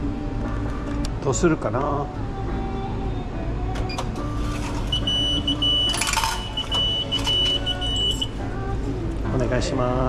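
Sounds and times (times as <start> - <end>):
high electronic beeps: 4.9 - 8.4.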